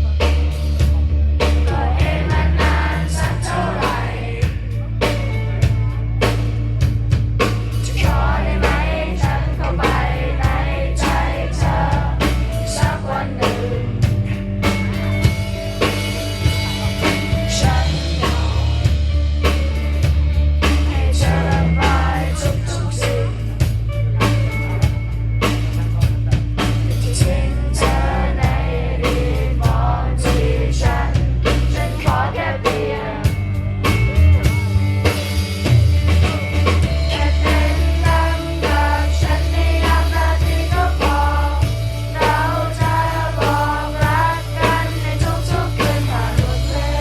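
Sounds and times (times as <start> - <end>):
heavy bass line: 0.0 - 47.0
steady drum beat: 0.0 - 47.0
person singing: 16.5 - 19.0, 20.7 - 24.8.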